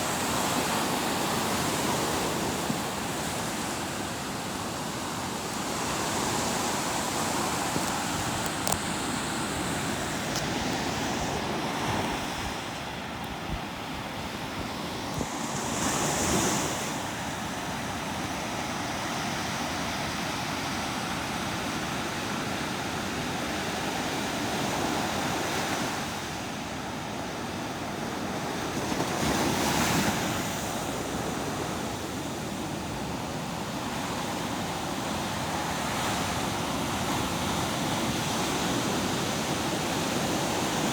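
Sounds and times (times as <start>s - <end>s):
waves washing in: 0.0s - 40.9s.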